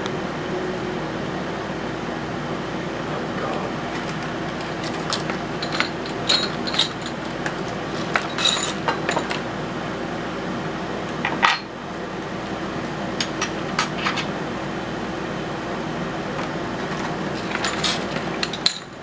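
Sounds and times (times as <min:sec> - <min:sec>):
steady hum: 0:00.0 - 0:19.0
small metal parts clinking: 0:04.0 - 0:09.4, 0:16.8 - 0:19.0.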